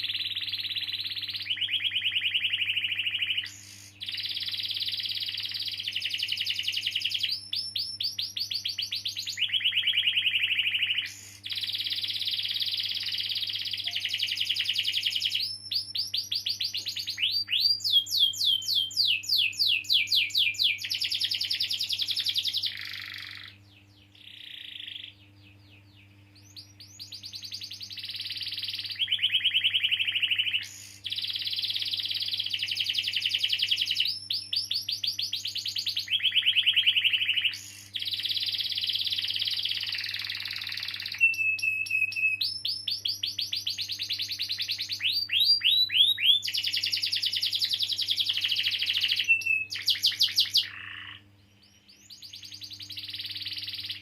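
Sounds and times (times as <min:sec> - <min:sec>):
canary singing trills: 0:00.0 - 0:54.0.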